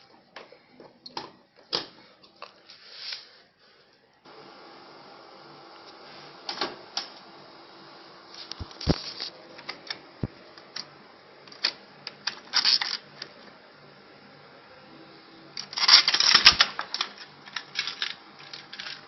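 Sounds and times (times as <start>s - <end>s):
steady low hum: 4.1s - 19.0s.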